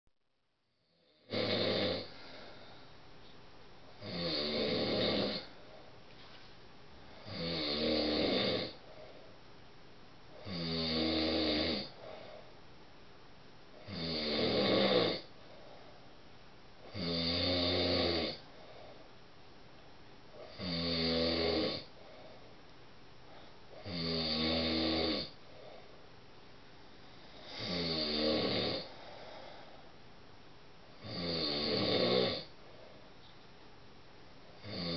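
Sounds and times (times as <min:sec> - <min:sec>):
man snoring loudly: 0:00.9 - 0:02.1, 0:04.0 - 0:05.5, 0:07.2 - 0:08.8, 0:10.4 - 0:12.0, 0:13.8 - 0:15.3, 0:16.8 - 0:18.4, 0:20.4 - 0:21.9, 0:23.8 - 0:25.4, 0:27.3 - 0:29.0, 0:31.0 - 0:32.5, 0:34.6 - 0:34.9.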